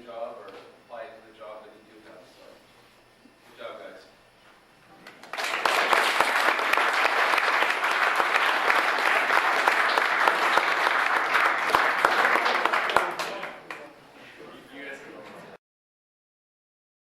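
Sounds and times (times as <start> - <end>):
audience applauding: 5.2 - 13.9.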